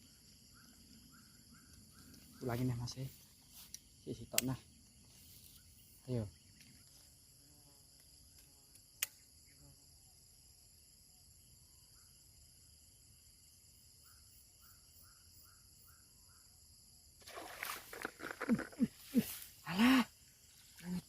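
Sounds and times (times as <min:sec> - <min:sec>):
faint chirps: 0:00.0 - 0:07.3
insects chorus: 0:00.0 - 0:21.0
sharp click: 0:09.0 - 0:09.2.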